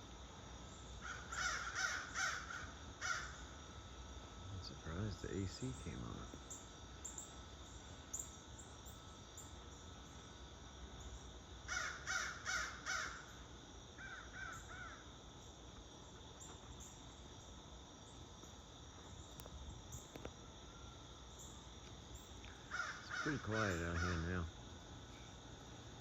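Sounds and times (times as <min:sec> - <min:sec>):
air conditioner humming: 0:00.0 - 0:11.8
crows cawing: 0:01.0 - 0:03.4, 0:11.7 - 0:13.3, 0:14.0 - 0:15.0, 0:22.6 - 0:24.5.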